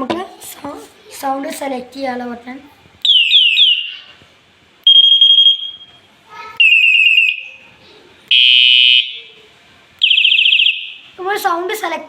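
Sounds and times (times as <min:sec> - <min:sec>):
electronic bicycle horn siren tones: 0:08.3 - 0:09.3.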